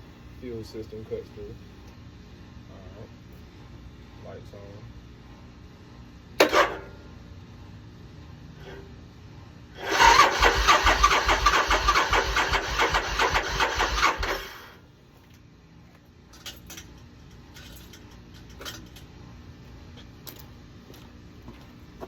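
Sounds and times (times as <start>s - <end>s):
motorcycle electric starter cranking: 9.8s - 14.8s.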